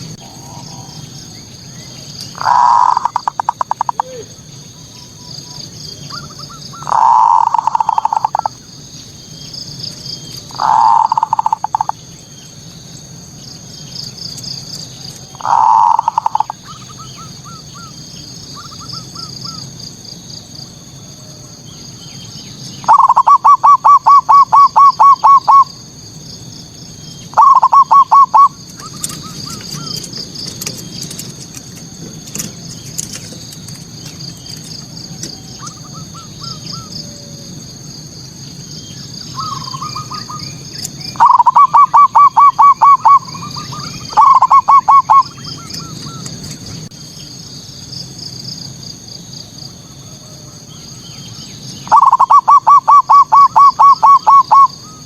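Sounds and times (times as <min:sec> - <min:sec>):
dove cooing: 0:00.0 - 0:08.7, 0:10.4 - 0:12.0, 0:15.2 - 0:19.7, 0:22.8 - 0:25.7, 0:27.3 - 0:30.1, 0:39.4 - 0:46.5, 0:51.8 - 0:55.0
faint high-pitched chirping: 0:00.0 - 0:19.9, 0:20.9 - 0:25.8, 0:26.6 - 0:31.3, 0:32.4 - 0:37.6, 0:38.4 - 0:47.4, 0:49.6 - 0:55.0.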